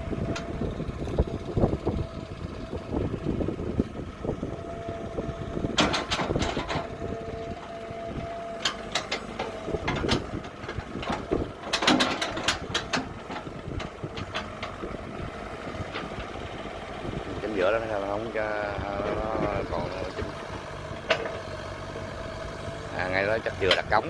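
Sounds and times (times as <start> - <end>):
excavator diesel engine: 0.0 - 24.0
knocks and clatters of digging: 5.7 - 14.9, 19.0 - 21.7, 23.4 - 24.0.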